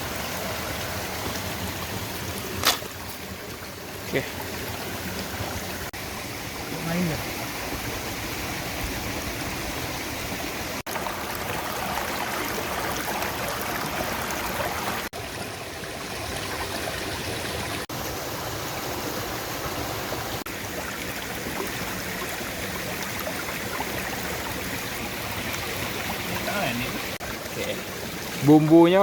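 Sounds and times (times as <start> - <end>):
stream water rushing: 0.0 - 29.0.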